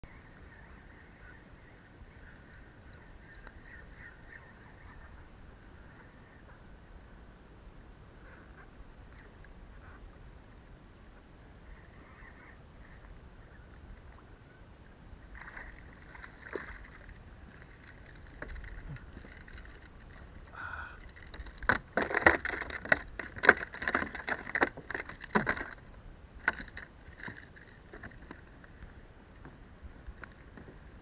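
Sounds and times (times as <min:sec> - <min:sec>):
knocks and rattles against kayak: 0:15.2 - 0:31.0
water splashing: 0:15.3 - 0:21.3.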